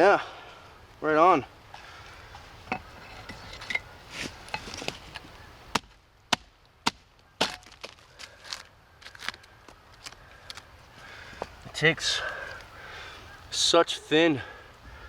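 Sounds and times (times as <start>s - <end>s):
hewing tool chopping wood: 5.7s - 8.0s.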